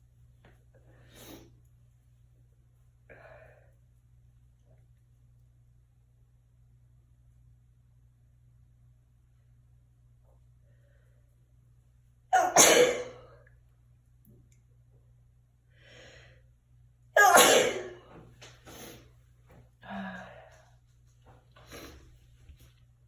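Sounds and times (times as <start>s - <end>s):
person sneezing: 12.3s - 13.3s, 17.2s - 18.1s
person breathing: 15.7s - 16.5s, 19.8s - 20.7s
person sniffing: 21.6s - 22.2s.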